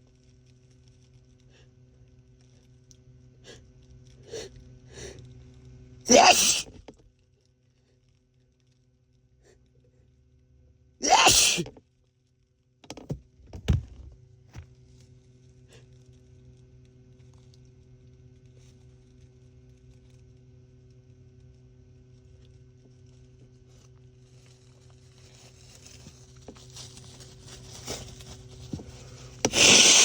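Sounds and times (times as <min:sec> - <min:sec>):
man sneezing: 0:06.1 - 0:06.7, 0:11.0 - 0:11.7, 0:29.5 - 0:30.0.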